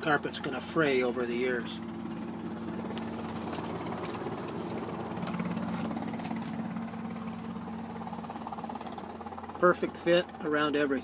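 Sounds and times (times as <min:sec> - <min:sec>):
helicopter drone: 0:00.0 - 0:11.0.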